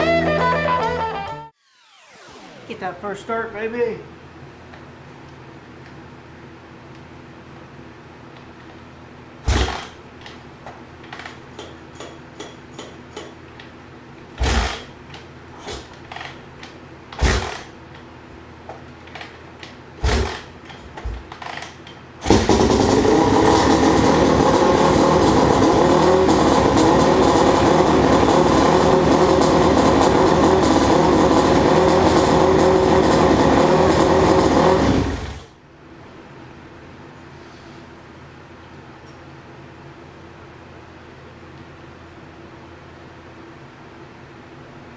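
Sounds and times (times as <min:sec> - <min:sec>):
motocross engine running: 0:20.0 - 0:20.5, 0:22.2 - 0:35.5
kick-start thumps: 0:22.2 - 0:32.6.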